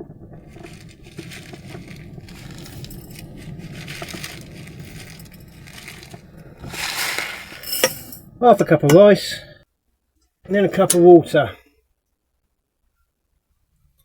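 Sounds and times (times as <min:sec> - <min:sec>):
dry rice rustling in packet: 0:00.4 - 0:08.2.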